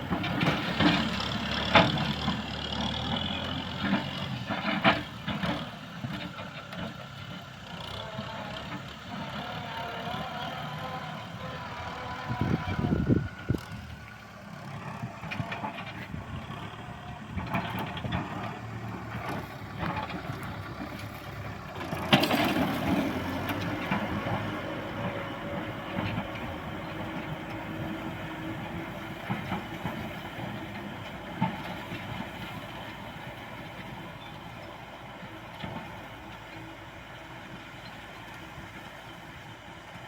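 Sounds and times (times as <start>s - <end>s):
tractor diesel engine running: 0.0s - 40.0s.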